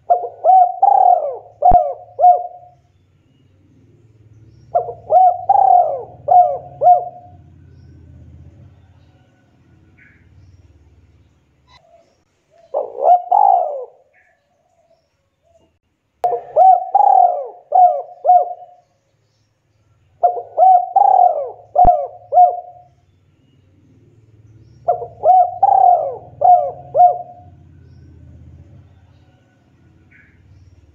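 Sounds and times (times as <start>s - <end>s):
dove cooing: 0.0s - 2.8s, 4.7s - 10.2s, 11.7s - 14.4s, 16.2s - 18.9s, 20.2s - 22.9s, 24.8s - 30.9s.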